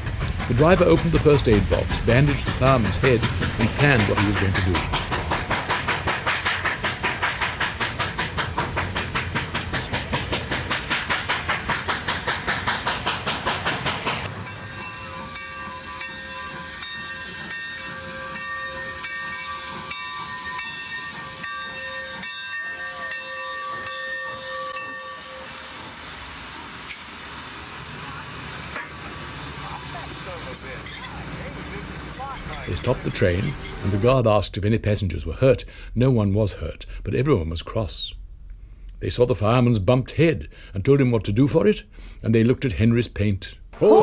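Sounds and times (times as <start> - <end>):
steam hissing: 0.0 - 34.2
steam locomotive chuffing: 0.0 - 38.1.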